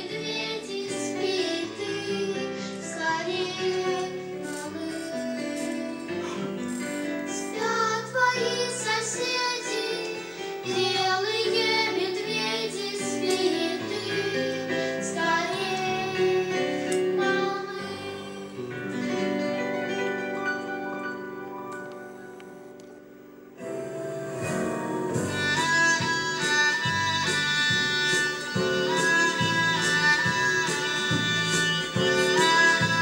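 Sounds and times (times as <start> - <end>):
child singing: 0.0 - 6.4, 7.3 - 18.6
instrumental accompaniment: 0.0 - 33.0.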